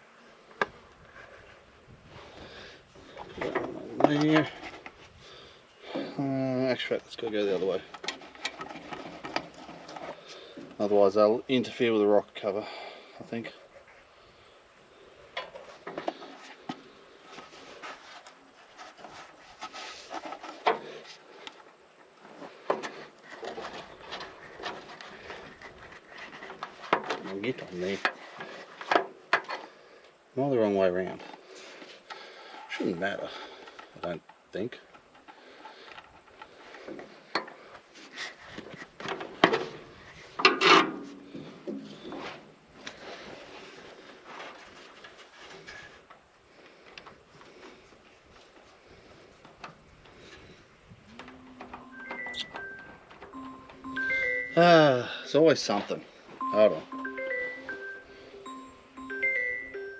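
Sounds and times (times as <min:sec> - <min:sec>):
rubbing and scraping: 0:07.2 - 0:11.0, 0:15.5 - 0:21.4, 0:22.3 - 0:29.8, 0:37.9 - 0:46.1.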